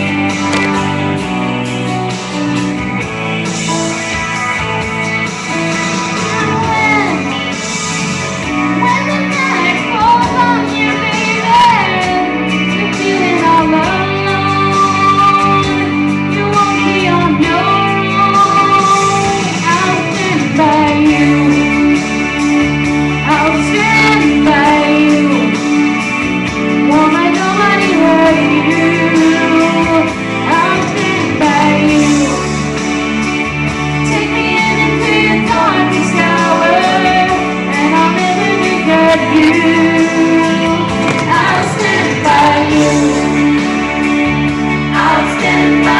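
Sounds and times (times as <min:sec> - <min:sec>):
guitar music: 0:00.0 - 0:45.9
woman singing: 0:06.2 - 0:07.5, 0:08.7 - 0:22.3, 0:23.2 - 0:25.6, 0:26.8 - 0:32.6, 0:34.0 - 0:44.1, 0:44.8 - 0:45.9.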